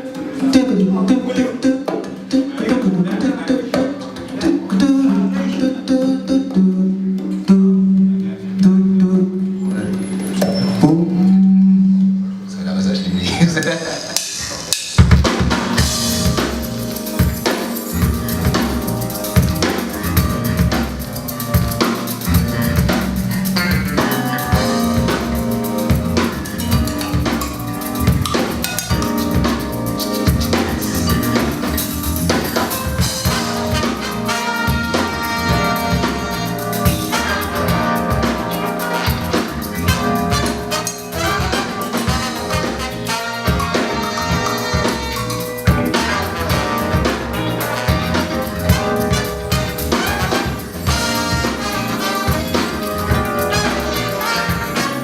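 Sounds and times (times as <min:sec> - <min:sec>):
drum kit groove: 0:13.6 - 0:55.0
live band playing: 0:14.0 - 0:55.0.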